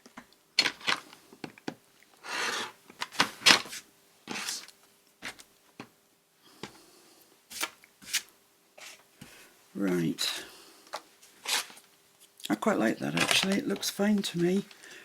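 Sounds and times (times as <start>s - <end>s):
paper scraping strokes: 3.7s - 5.4s, 11.3s - 11.8s.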